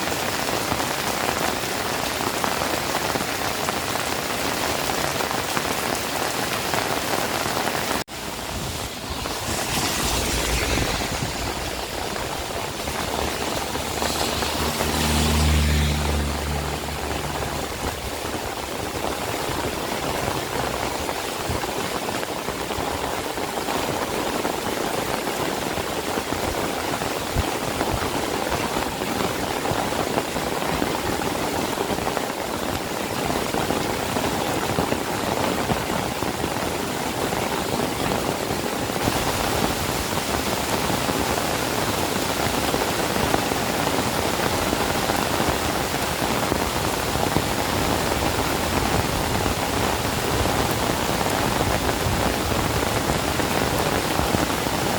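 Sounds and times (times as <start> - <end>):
steady rain: 0.0 - 54.9
vehicle engine passing: 8.2 - 22.0.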